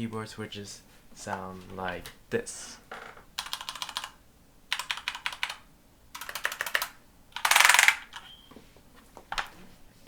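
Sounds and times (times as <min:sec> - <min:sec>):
mechanical keyboard typing: 0:03.4 - 0:08.3.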